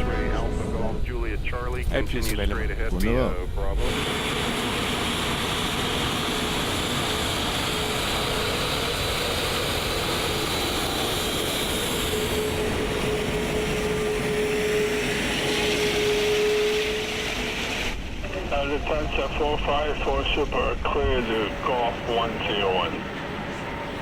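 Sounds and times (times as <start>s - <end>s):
jet airliner taxiing: 0.0s - 24.0s
steady hum: 11.5s - 24.0s.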